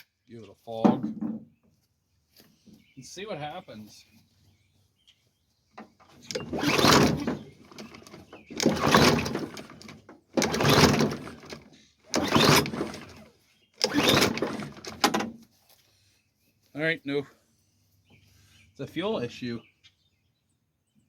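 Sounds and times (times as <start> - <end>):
mower engine cranking on pull-start: 6.0 - 15.4.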